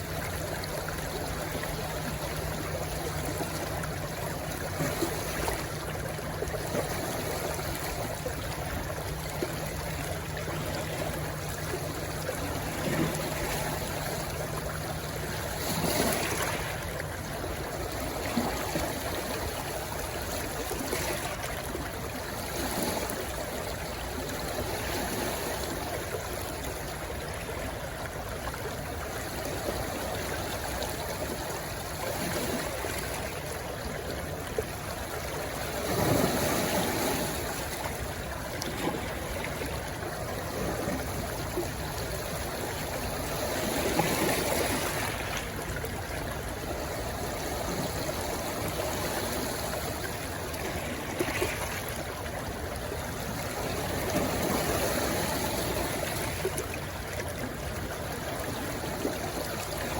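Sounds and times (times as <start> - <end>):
stream rushing and babbling: 0.0 - 59.9.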